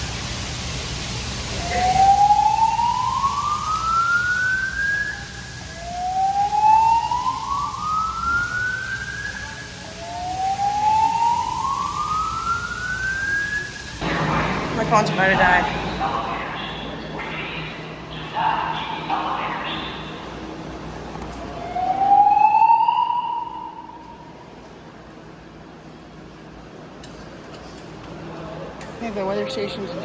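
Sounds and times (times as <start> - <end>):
slow-whoop evacuation tone: 1.1 - 24.6.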